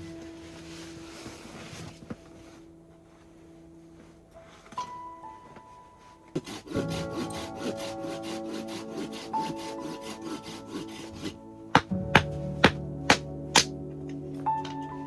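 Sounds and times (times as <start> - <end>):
background music sustained tones: 0.0 - 15.0
hand saw cutting wood: 6.4 - 13.7.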